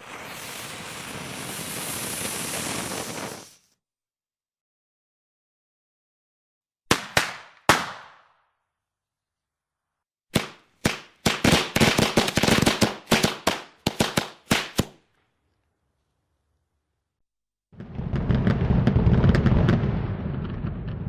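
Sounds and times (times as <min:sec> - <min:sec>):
fireworks bangs: 0:00.0 - 0:03.6, 0:17.8 - 0:21.0.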